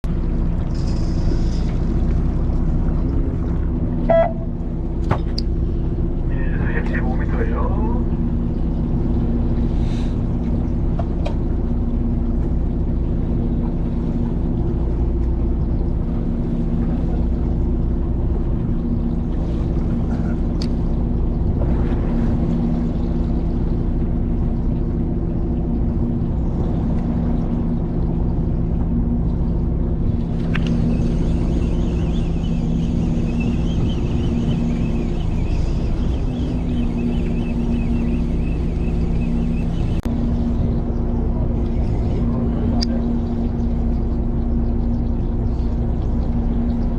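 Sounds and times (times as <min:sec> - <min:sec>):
boat engine humming: 0:00.0 - 0:46.9.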